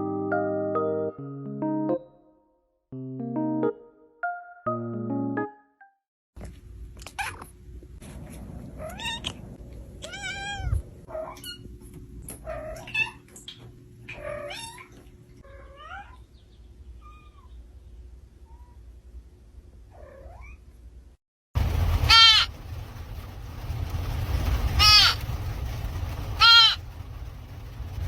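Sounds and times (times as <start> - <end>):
cat meowing: 8.8 - 9.4, 10.0 - 11.6, 14.1 - 16.2.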